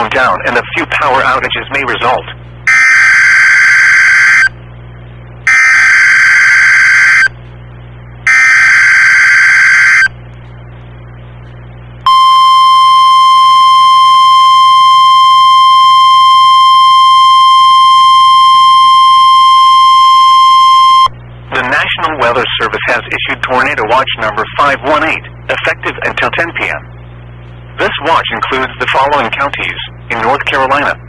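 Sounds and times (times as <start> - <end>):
steady high alert tone: 2.7 - 4.5, 5.5 - 7.3, 8.3 - 10.1, 12.1 - 21.1
buzzy digital data squawk: 2.7 - 4.6, 5.5 - 7.4, 8.3 - 10.2.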